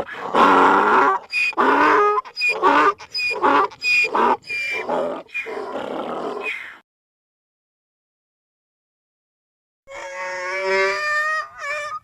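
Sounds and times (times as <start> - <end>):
donkey braying: 0.0 - 6.5, 9.9 - 12.0.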